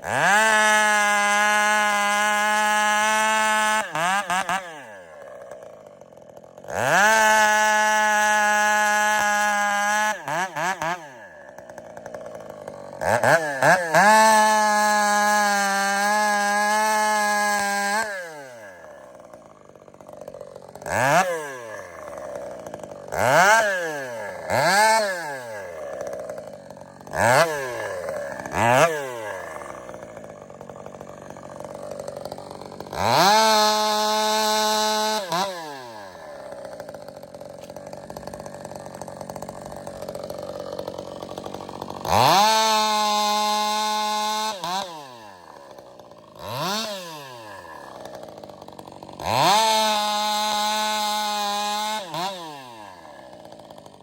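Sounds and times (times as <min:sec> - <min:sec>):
chainsaw idling and revving: 0:00.0 - 0:54.0.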